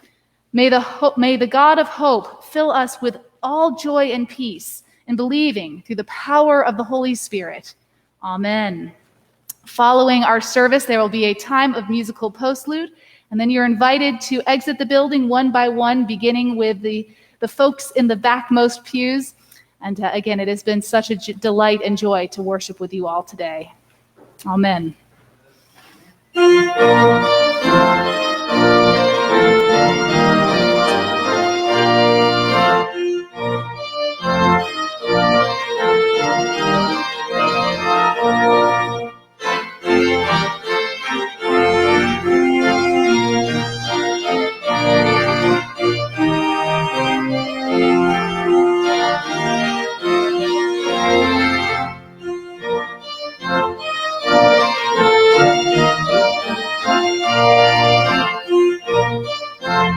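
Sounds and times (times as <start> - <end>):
organ playing full chords: 26.3 - 59.9.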